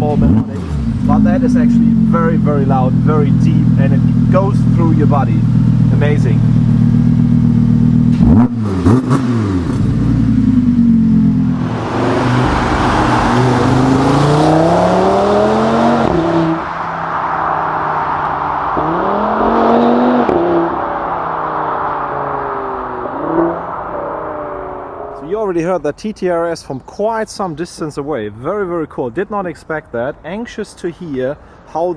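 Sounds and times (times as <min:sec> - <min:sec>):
distant car engine accelerating: 0:00.0 - 0:25.3.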